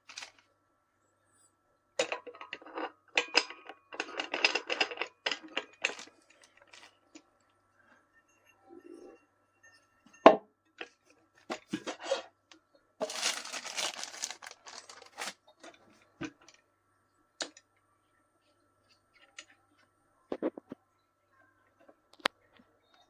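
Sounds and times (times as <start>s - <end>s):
packaging tearing and crinkling: 13.0s - 15.4s.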